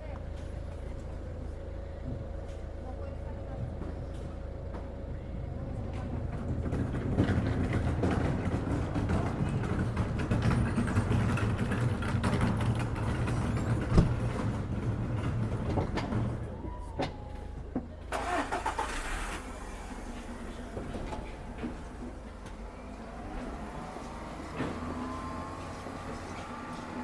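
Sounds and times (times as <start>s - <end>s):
vehicle engine rumble passing: 0.3s - 27.0s.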